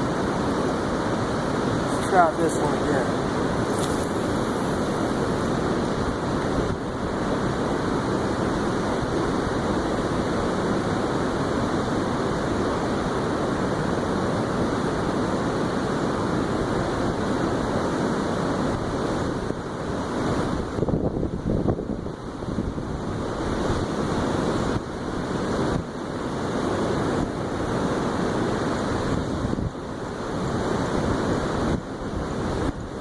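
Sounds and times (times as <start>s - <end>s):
wind buffeting microphone: 20.3s - 25.8s.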